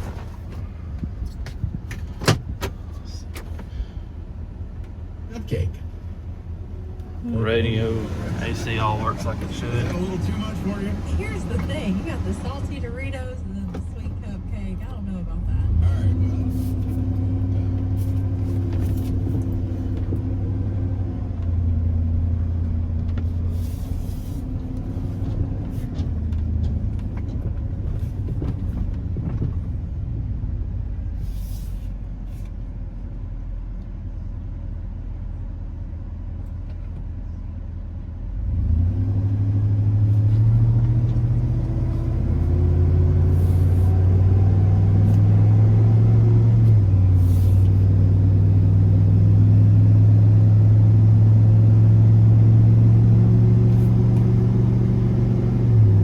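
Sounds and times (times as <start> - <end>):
truck engine revving: 6.5 - 14.4, 38.3 - 56.0.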